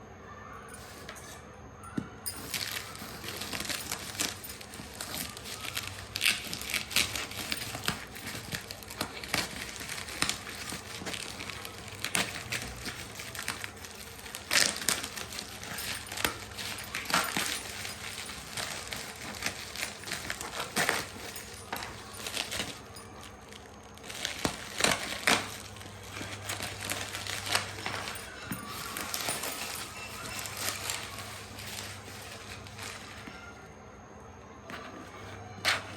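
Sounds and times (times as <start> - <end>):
packaging crinkling and rustling: 2.2 - 33.7.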